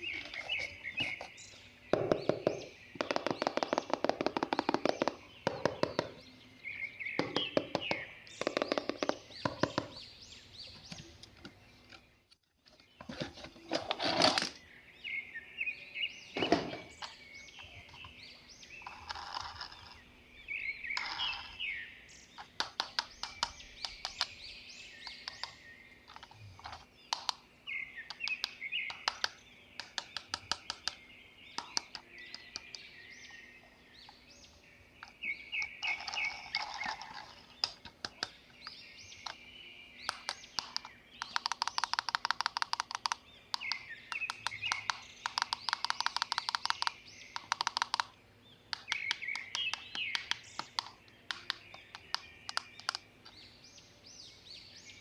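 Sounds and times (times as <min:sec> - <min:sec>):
chirping: 0:00.0 - 0:12.0, 0:13.0 - 0:55.0
toys clicking and tapping: 0:01.9 - 0:06.2, 0:07.2 - 0:10.0, 0:22.4 - 0:24.4, 0:25.0 - 0:27.4, 0:28.1 - 0:31.0, 0:31.6 - 0:32.9, 0:35.0 - 0:39.4, 0:40.1 - 0:53.4.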